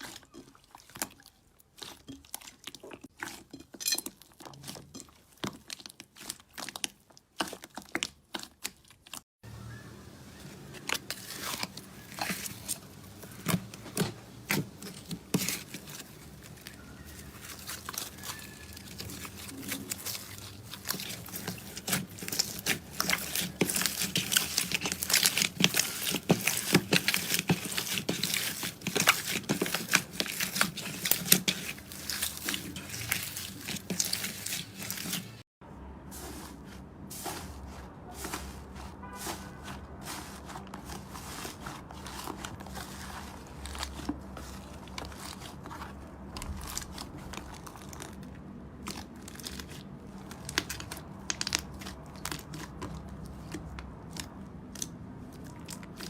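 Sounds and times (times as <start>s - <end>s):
slime crackling and popping: 10.8s - 35.4s, 44.6s - 53.0s.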